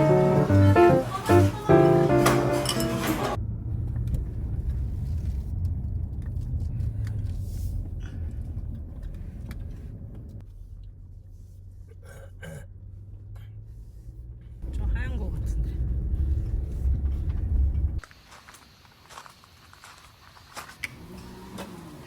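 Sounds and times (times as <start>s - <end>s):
car rumbling while driving: 3.3s - 18.0s.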